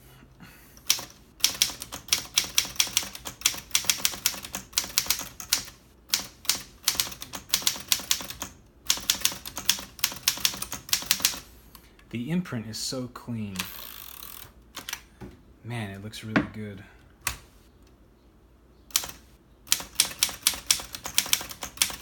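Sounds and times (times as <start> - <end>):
typewriter keys striking: 0.8 - 11.4, 18.9 - 22.0.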